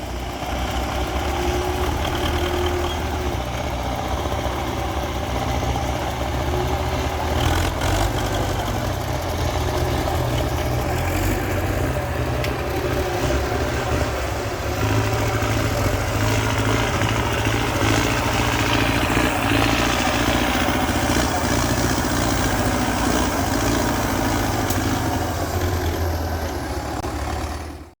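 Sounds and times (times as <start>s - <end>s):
tractor diesel engine running: 0.0s - 28.0s.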